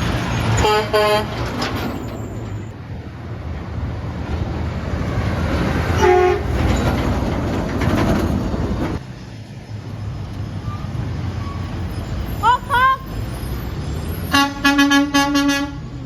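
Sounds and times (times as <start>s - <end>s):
truck engine and tyre rumble: 0.0s - 16.0s
train horn blast: 0.6s - 1.4s, 6.0s - 6.6s, 14.3s - 15.9s.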